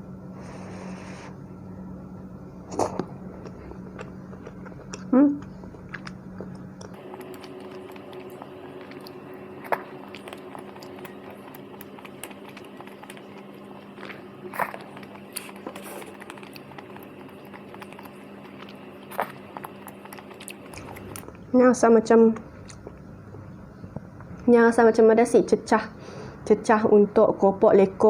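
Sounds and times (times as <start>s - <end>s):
steady low hum: 0.0s - 28.0s
soft mouth sounds eating: 2.7s - 21.4s.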